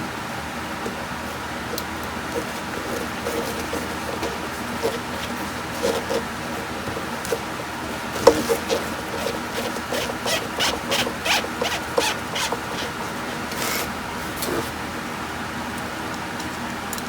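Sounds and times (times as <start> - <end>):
hand scraping strokes: 2.2 - 13.9.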